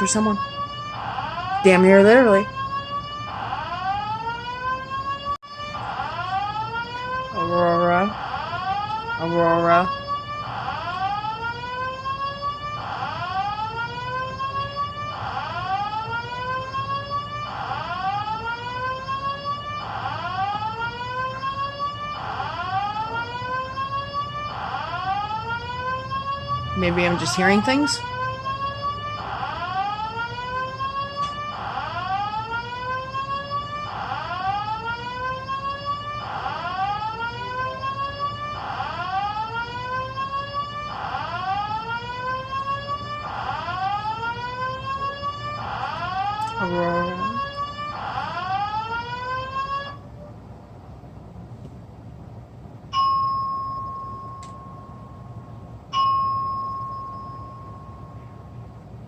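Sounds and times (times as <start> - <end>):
fire alarm rising whoop tone: 0.0 - 50.0, 52.9 - 58.6
chime tones: 53.0 - 58.3.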